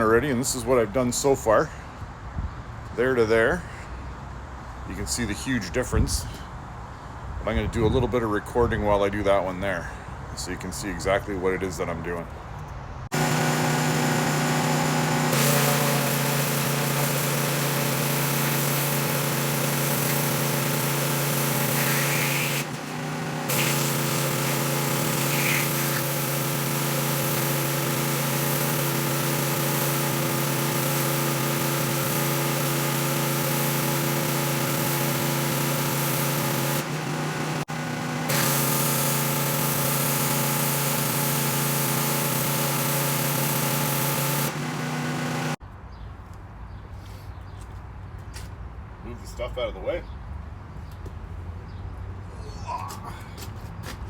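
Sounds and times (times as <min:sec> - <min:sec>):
pressure washer running: 0:13.1 - 0:45.6
water spray hissing on concrete: 0:14.9 - 0:36.8.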